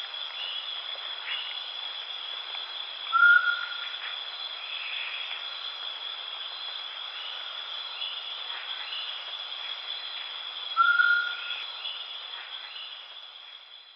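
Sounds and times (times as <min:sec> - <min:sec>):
forest insects chorus: 0:00.0 - 0:13.9
whistled bird call: 0:03.1 - 0:03.8, 0:10.8 - 0:11.5
faint chirps: 0:10.0 - 0:13.9.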